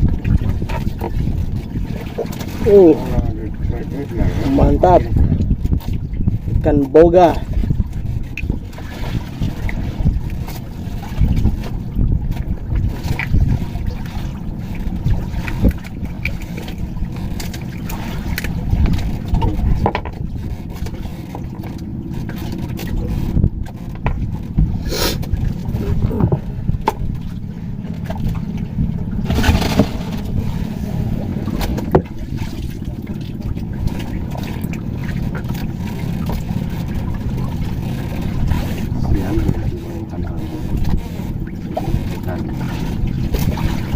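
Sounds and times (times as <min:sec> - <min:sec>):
wind rumbling on microphone: 0:00.0 - 0:43.9
knocks and scrapes: 0:16.6 - 0:28.5, 0:29.2 - 0:35.6.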